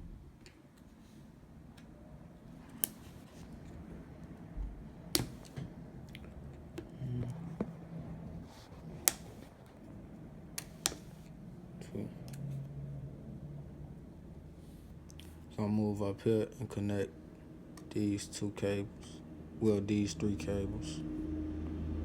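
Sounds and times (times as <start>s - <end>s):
connectors snapping off with clicks: 2.7s - 3.2s, 5.1s - 7.0s, 9.0s - 9.6s, 10.6s - 11.4s.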